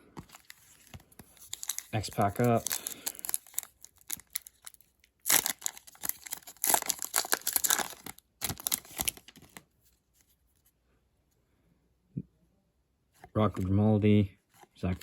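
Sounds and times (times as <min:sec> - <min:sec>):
foil wrapper tearing and crinkling: 0:00.3 - 0:09.6.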